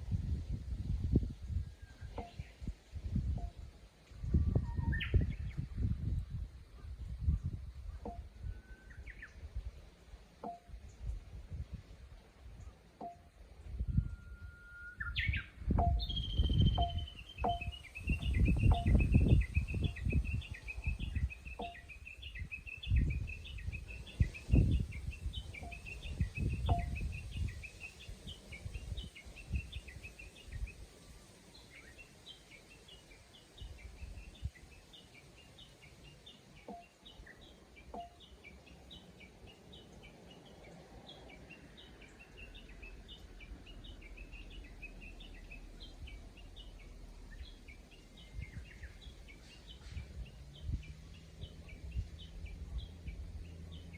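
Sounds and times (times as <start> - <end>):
bush warbler rapid high notes: 15.0 - 20.4
low rumbling thumps: 15.6 - 27.6.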